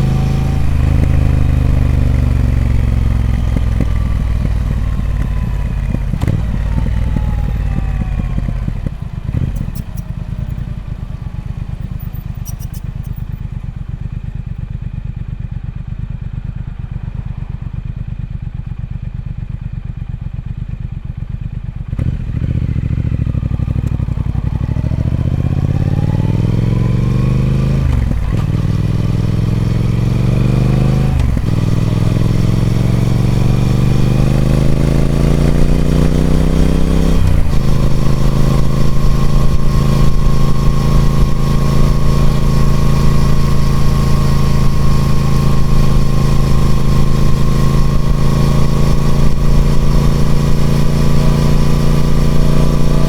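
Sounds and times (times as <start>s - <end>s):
motorcycle engine revving: 0.0s - 53.0s.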